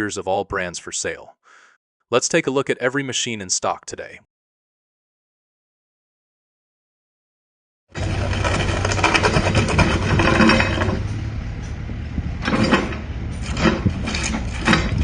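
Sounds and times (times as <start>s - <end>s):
loud rattling and clattering: 8.0s - 11.2s, 12.2s - 15.0s
diesel engine running: 8.0s - 15.0s.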